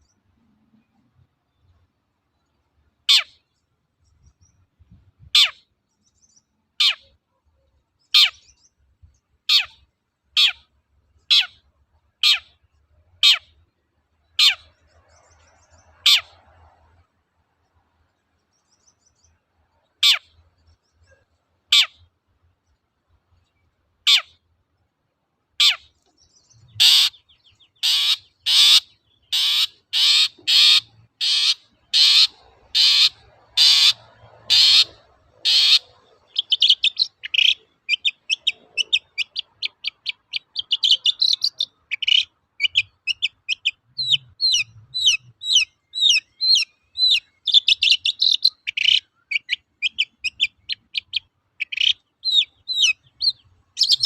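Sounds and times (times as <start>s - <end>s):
bird chattering song: 0.0s - 16.7s, 17.7s - 24.5s, 25.6s - 54.0s
shrike harsh rasping calls: 27.8s - 40.0s.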